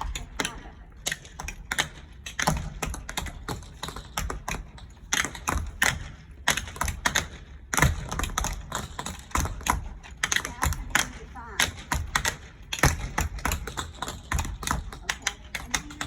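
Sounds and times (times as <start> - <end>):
tap shoes on hard floor: 0.0 - 16.0.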